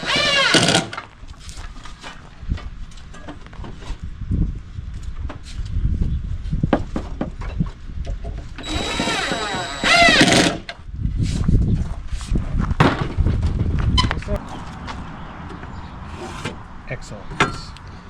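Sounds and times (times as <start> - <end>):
power drill whining: 0.0 - 0.9, 8.6 - 10.6.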